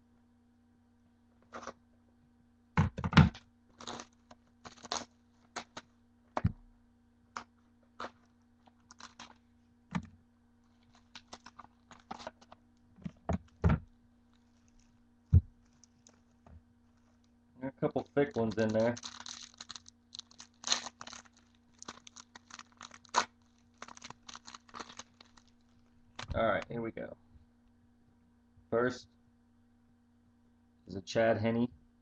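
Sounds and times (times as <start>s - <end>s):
box thuds and knocks: 2.8s - 3.4s, 15.3s - 15.5s
card contents rustling: 18.0s - 26.4s.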